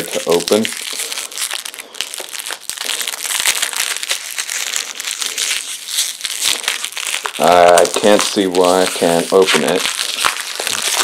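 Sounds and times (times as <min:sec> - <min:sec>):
packaging crinkling and rustling: 0:00.0 - 0:11.0.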